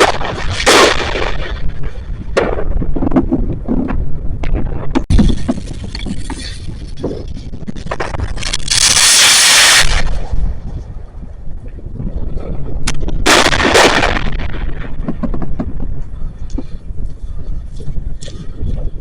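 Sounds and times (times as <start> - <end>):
fireworks bangs and crackles: 0.0 - 11.0, 12.8 - 16.0
hissing crackling firework rush: 5.3 - 10.5.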